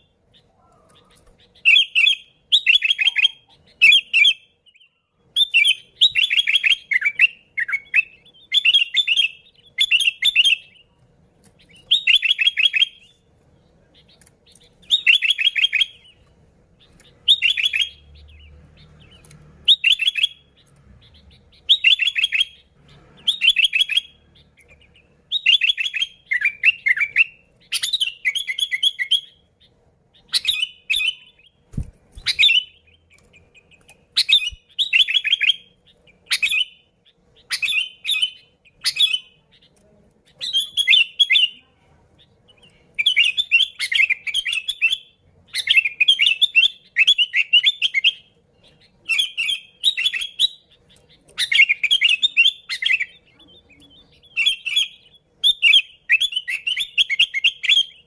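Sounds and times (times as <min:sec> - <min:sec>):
bird singing whistled phrases: 0:00.0 - 0:10.9, 0:11.7 - 0:13.2, 0:14.8 - 0:16.2, 0:17.2 - 0:29.4, 0:30.2 - 0:31.6, 0:32.2 - 0:39.4, 0:40.4 - 0:41.6, 0:42.5 - 0:58.0.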